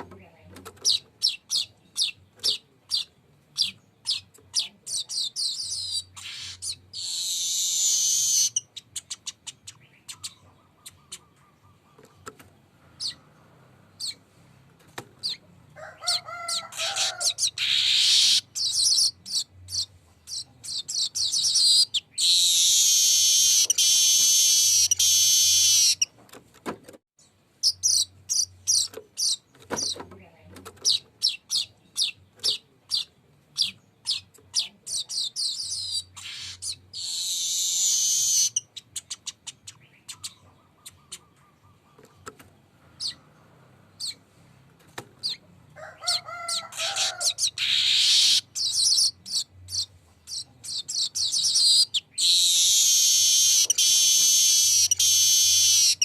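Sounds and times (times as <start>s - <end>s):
weaver bird singing: 0.7s - 12.3s, 16.5s - 26.1s, 27.2s - 30.0s, 30.8s - 42.3s, 46.8s - 56.0s.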